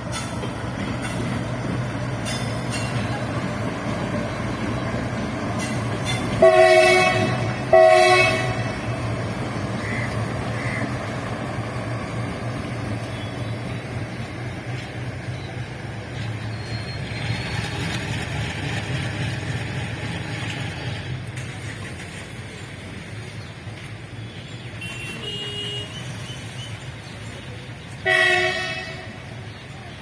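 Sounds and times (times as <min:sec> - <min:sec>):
vehicle engines rumbling: 0:00.0 - 0:30.0
short loud horn blast: 0:06.4 - 0:08.7.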